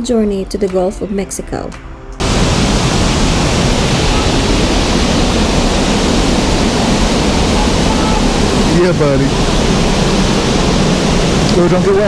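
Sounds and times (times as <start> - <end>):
water pouring down a waterfall: 2.2 - 12.0.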